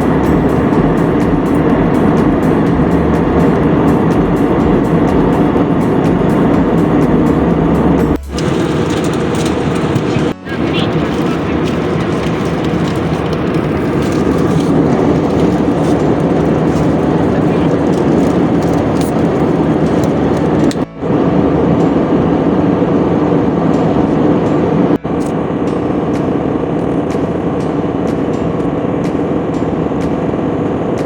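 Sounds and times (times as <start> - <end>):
jet engine cabin rush: 0.0 - 20.9.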